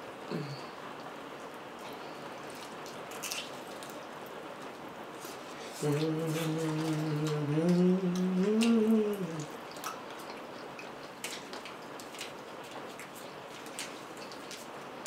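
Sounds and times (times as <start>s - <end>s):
person humming: 0.3s - 0.8s, 5.6s - 9.5s.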